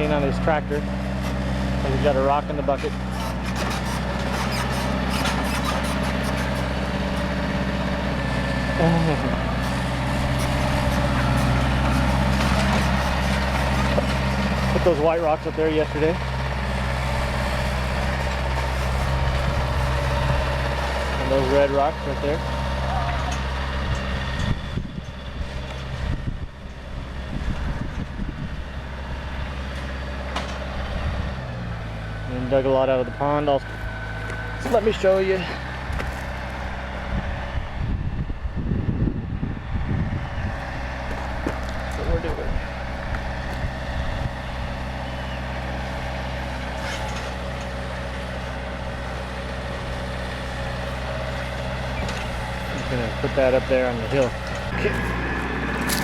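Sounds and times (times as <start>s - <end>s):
tractor engine running: 0.0s - 56.0s.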